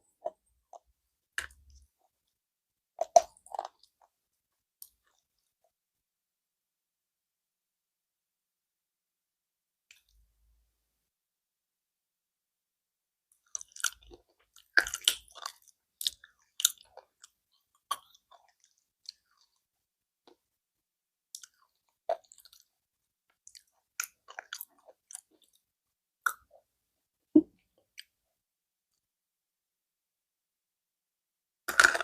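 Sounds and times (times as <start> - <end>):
slate pencils crunching in mouth: 14.7 - 16.8, 31.7 - 32.0.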